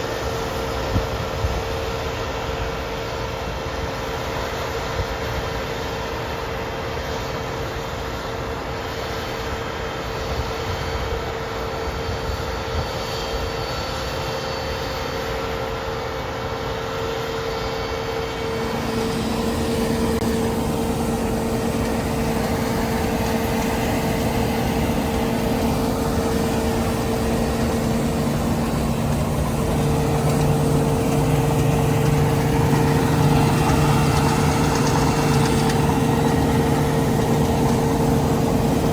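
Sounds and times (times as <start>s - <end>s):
combine harvester running: 0.0s - 38.9s
low hum: 17.6s - 38.9s.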